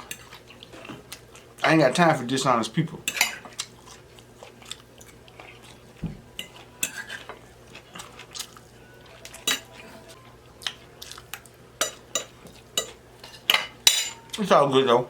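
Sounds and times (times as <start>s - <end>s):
cutlery clinking on plate: 3.1s - 3.6s, 6.4s - 7.4s, 9.2s - 9.8s, 11.4s - 14.3s.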